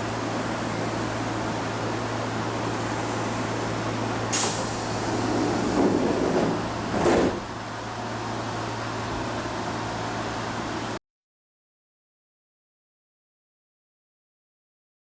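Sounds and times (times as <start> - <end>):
stopped train humming: 0.0 - 11.0
air hiss: 4.3 - 5.8
sliding doors closing: 4.3 - 7.6.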